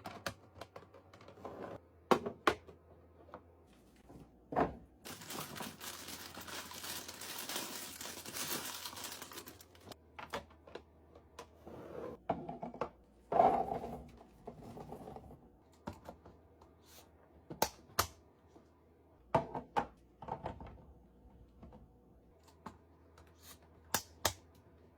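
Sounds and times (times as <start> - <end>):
plastic packaging crinkling and tearing: 5.1 - 10.0.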